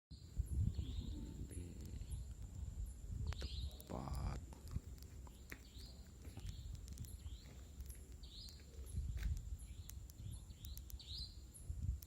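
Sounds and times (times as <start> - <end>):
small animals chirping: 0.4 - 12.0
sharp thin clicks: 3.3 - 8.6, 9.3 - 11.3.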